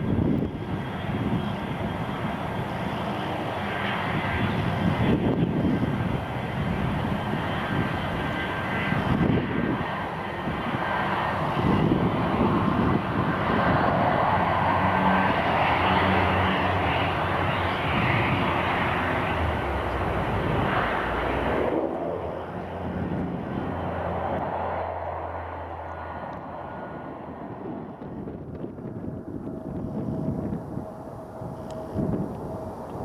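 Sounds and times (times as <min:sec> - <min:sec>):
jet engine rushing: 0:00.0 - 0:33.0.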